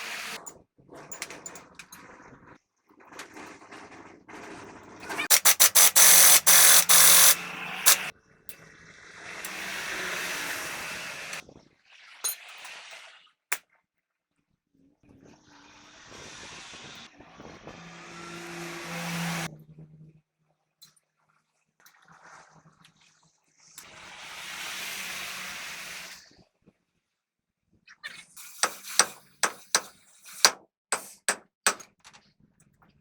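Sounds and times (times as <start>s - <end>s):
rapid loud tool pulses: 5.2s - 8.1s, 9.4s - 11.4s
sharp clicks: 5.3s - 8.1s
air hiss: 28.4s - 31.3s.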